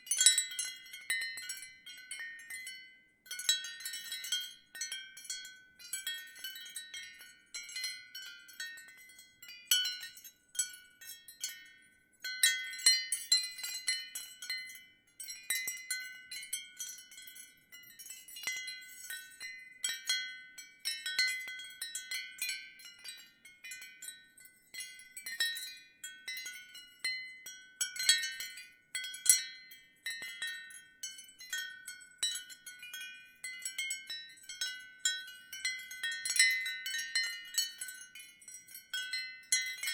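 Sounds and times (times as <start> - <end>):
ceramic wind chime tinkling: 0.0 - 39.9.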